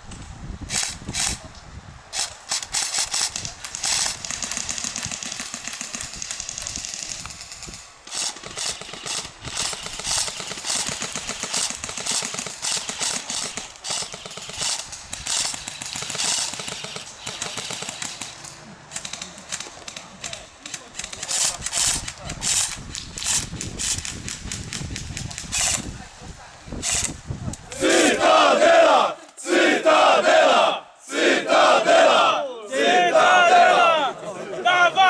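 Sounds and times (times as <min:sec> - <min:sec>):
airsoft guns firing in bursts: 0:02.1 - 0:26.0, 0:26.8 - 0:27.2.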